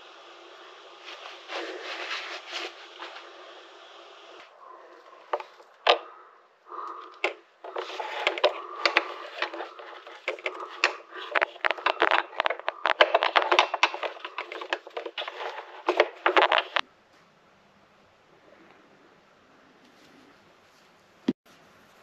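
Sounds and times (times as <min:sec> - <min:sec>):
small hard objects clattering: 0:06.7 - 0:16.8.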